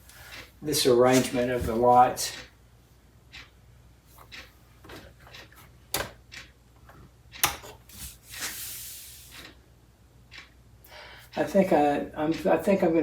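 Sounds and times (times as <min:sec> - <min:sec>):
small knocks and clicks: 0:04.2 - 0:07.8
scraping rustling hiss: 0:07.9 - 0:09.6.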